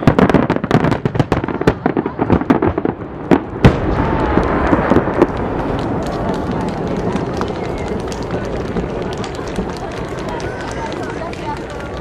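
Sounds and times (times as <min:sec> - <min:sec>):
loud firework bang: 0:00.0 - 0:08.9
fireworks bursts and crackles: 0:00.0 - 0:12.0.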